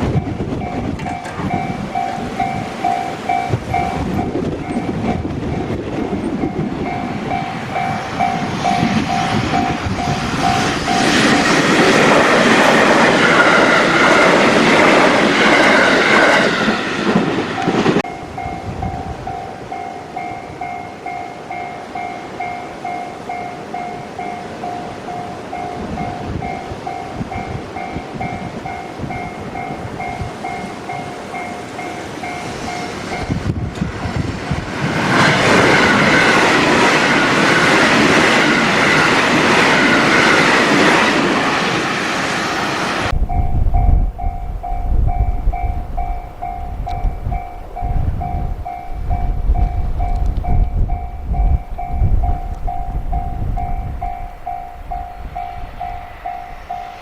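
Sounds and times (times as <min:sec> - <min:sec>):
level-crossing warning bell ringing: 0:00.0 - 0:57.0
train passing: 0:00.0 - 0:57.0.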